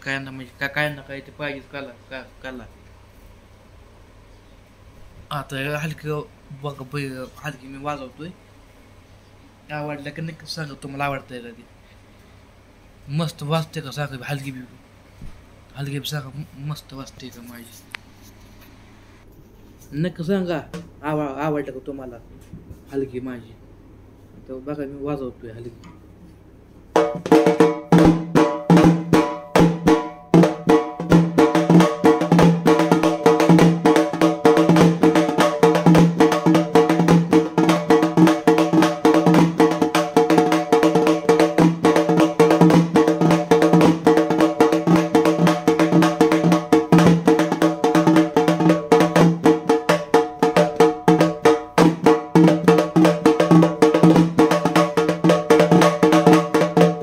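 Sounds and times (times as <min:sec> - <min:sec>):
frame drum beaten with sticks: 0:26.9 - 0:57.0.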